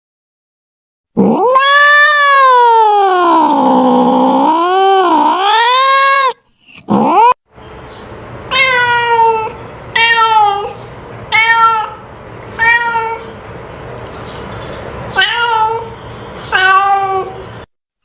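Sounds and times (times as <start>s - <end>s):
cat meowing: 1.2s - 7.4s, 8.5s - 13.4s, 15.2s - 17.4s.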